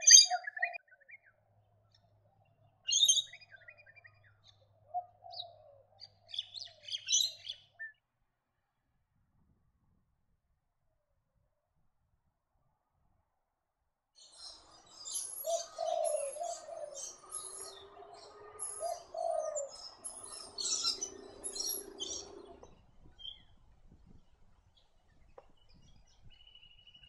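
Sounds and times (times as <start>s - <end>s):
small birds chirping: 0.0s - 7.9s, 14.2s - 27.0s
dove cooing: 15.2s - 22.4s.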